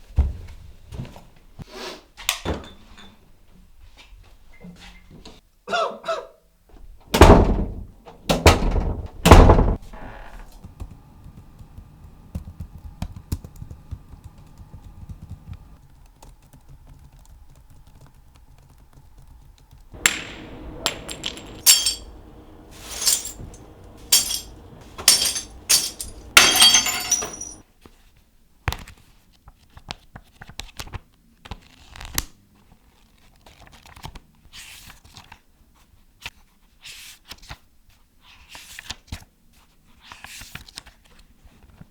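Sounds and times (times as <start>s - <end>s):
loud thunks: 7.2s - 9.8s, 20.0s - 27.6s
sharp knocks and clinks: 20.0s - 27.6s.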